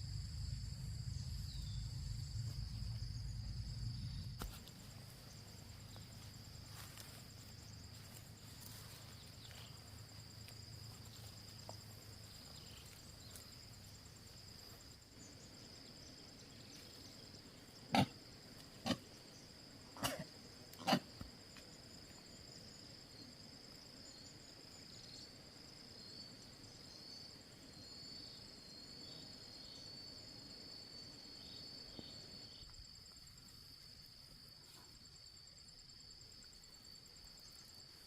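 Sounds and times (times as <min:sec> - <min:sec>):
low background rumble: 0:00.0 - 0:06.4
insects trilling: 0:00.0 - 0:38.0.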